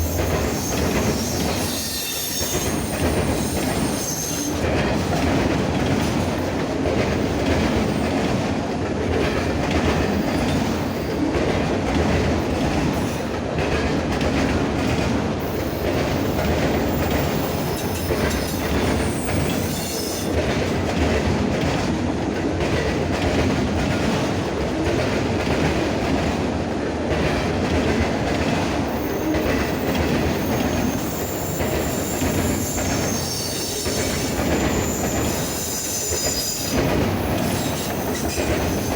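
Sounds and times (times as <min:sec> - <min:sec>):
wheels clacking over rail joints: 0:00.0 - 0:38.9
faint wheel squeal: 0:00.1 - 0:04.6.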